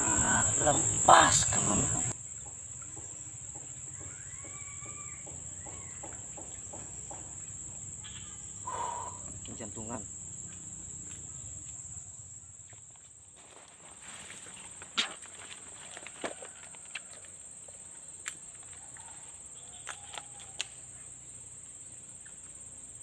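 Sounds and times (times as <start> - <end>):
bird calls: 0.0 - 10.6
high-pitched insect drone: 0.0 - 13.1.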